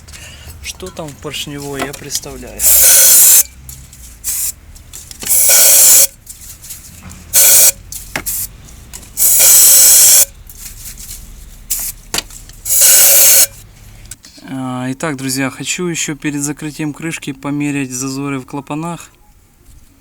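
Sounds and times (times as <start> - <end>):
air blow gun hissing blasts: 2.6 - 3.5, 4.2 - 4.6, 5.2 - 6.2, 7.3 - 8.5, 9.2 - 10.3, 11.7 - 12.0, 12.6 - 13.5.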